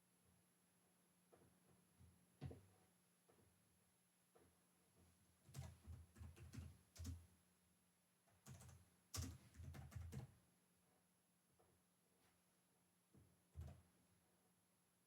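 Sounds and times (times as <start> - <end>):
faint keyboard typing: 5.4 - 7.4, 8.2 - 10.5, 13.5 - 14.0.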